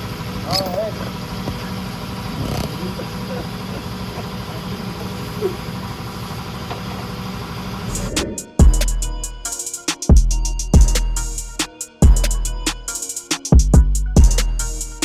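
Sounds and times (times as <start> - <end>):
engine idling: 0.0 - 15.0
faint voices: 0.3 - 7.2
music with heavy bass drum: 7.9 - 15.0.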